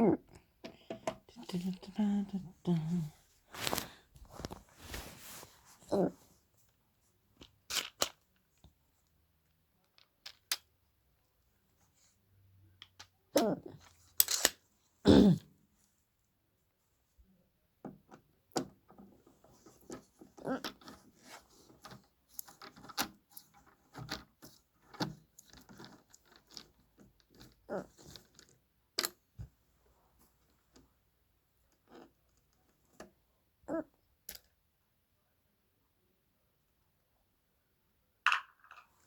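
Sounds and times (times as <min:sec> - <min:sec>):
plastic and metal parts handled: 0:18.6 - 0:29.2.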